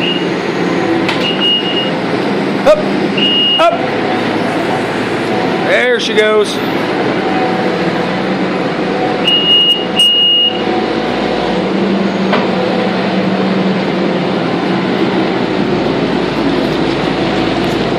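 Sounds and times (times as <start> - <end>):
diesel engine running: 0.0 - 17.9
short high beeps: 3.2 - 3.7, 9.3 - 10.6.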